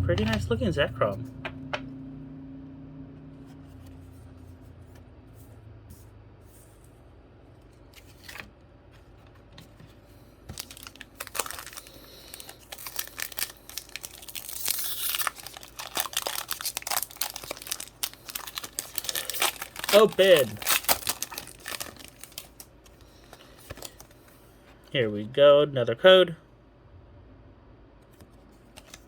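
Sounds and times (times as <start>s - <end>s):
foil wrapper tearing and crinkling: 10.5s - 24.2s.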